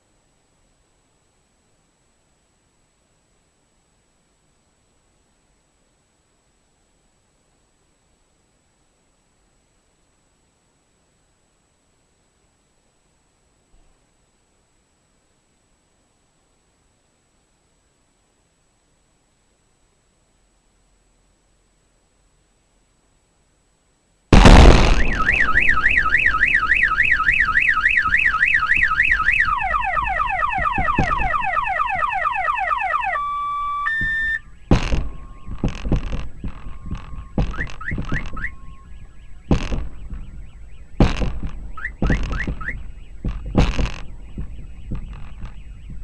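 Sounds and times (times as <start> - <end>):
sharp thumps: 24.3 - 28.9, 30.7 - 31.4, 34.0 - 46.0
car alarm siren: 24.7 - 46.0.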